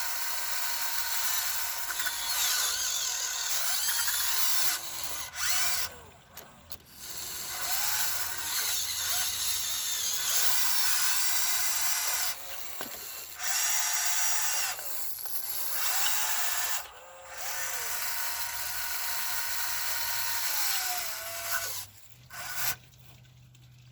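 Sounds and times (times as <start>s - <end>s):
electric motors whirring: 0.0s - 22.9s.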